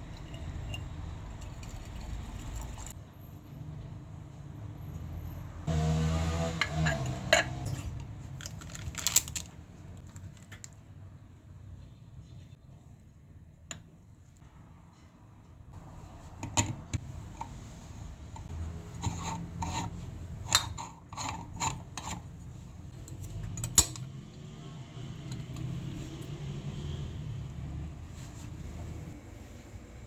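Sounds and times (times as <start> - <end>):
kitchen objects rubbing and scraping: 0.0 - 3.0, 5.7 - 9.5, 15.8 - 30.0.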